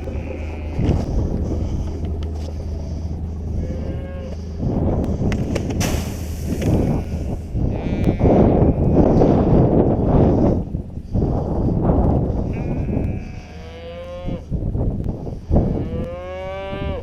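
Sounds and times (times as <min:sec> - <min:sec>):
cattle mooing: 0:00.0 - 0:05.3, 0:06.7 - 0:09.0, 0:12.5 - 0:14.5, 0:15.7 - 0:17.0
steady low hum: 0:00.0 - 0:17.0.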